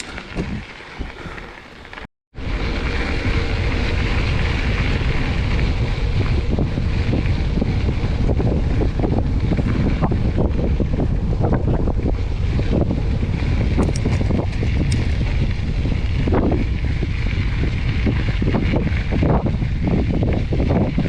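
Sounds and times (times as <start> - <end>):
bike tyres rumbling on dirt: 0.0 - 21.0
wind buffeting microphone: 0.0 - 21.0
bike rattling and knocking: 11.5 - 20.9.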